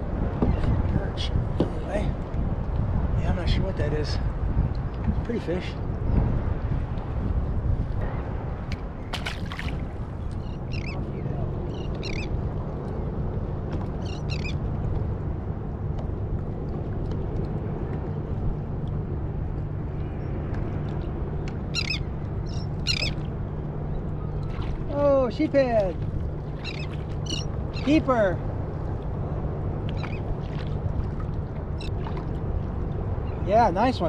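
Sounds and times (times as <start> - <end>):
wind and water rumble on microphone: 0.0 - 34.0
short high bird calls: 10.4 - 11.0, 11.7 - 12.3, 21.8 - 23.2, 26.6 - 28.0.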